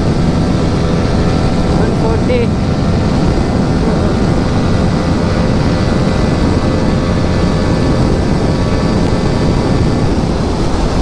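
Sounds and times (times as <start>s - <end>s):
motorcycle engine running: 0.0s - 11.0s
wind rush over microphone: 0.0s - 11.0s.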